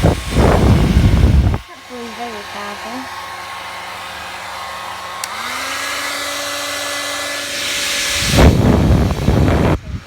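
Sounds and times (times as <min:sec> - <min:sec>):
hair dryer running: 0:00.0 - 0:10.0
hair dryer switch click: 0:05.2 - 0:05.9.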